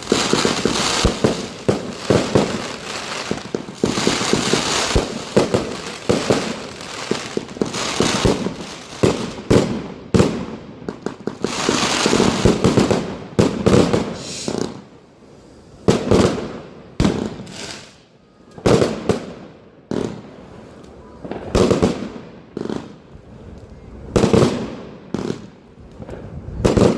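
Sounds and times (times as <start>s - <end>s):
firework cake firing: 0.0s - 10.4s, 11.0s - 14.9s
firework crackling: 0.0s - 14.9s, 15.8s - 18.0s.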